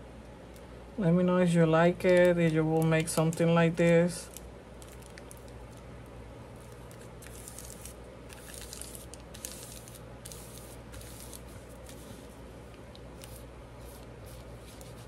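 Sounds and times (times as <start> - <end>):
low steady hum: 0.0 - 15.0
paper rustling and scratching: 6.6 - 12.4, 13.1 - 15.0.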